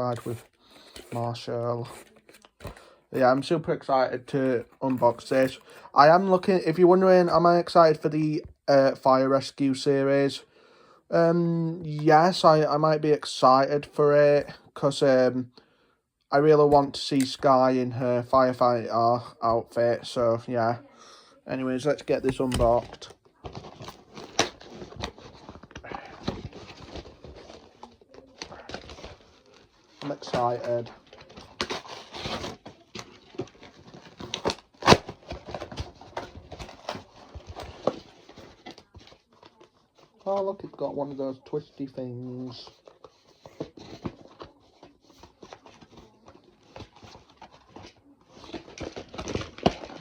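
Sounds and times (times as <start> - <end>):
cardboard packaging clicks and scrapes: 22.3 - 40.5, 42.7 - 50.0.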